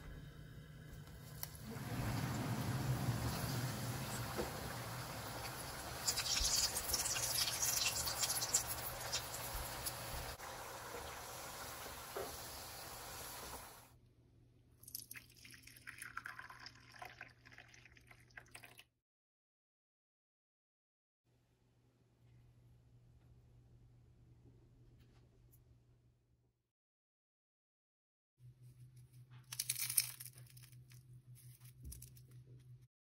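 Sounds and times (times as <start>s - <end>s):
wet liquid crackling: 1.5s - 10.4s
drips and pops: 1.7s - 12.5s, 14.8s - 18.8s.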